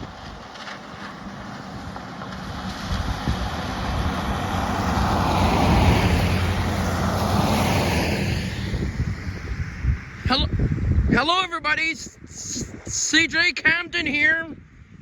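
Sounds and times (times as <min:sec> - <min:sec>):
vehicle passing by: 0:00.0 - 0:10.2.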